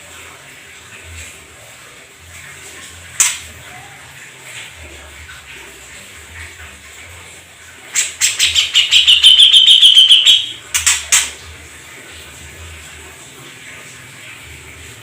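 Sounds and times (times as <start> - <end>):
songbird singing: 8.2 - 10.6.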